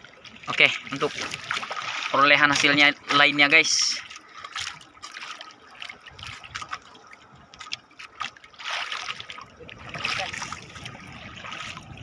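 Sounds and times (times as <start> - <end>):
water trickling and dripping: 0.0 - 12.0
small splashes and taps: 0.5 - 3.2, 3.9 - 6.9, 7.5 - 10.6.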